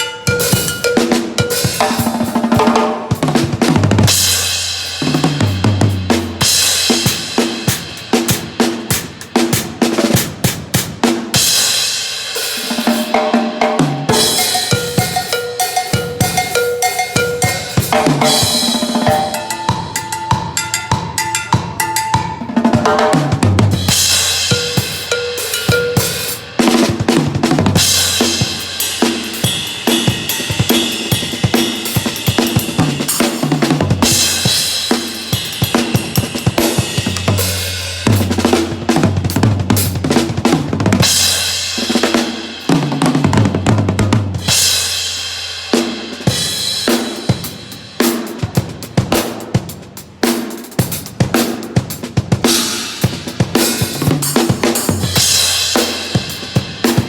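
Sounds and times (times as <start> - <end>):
drum kit grooves: 0.0 - 57.0
cymbal crashes: 14.1 - 22.3, 27.8 - 33.3.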